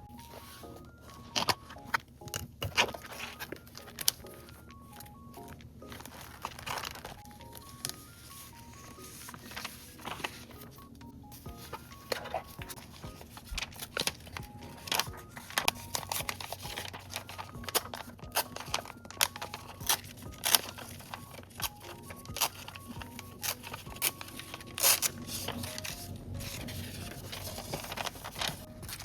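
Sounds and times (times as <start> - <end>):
soft background melody: 0.0 - 29.0
paper tearing and crinkling: 5.8 - 10.6, 11.6 - 29.0.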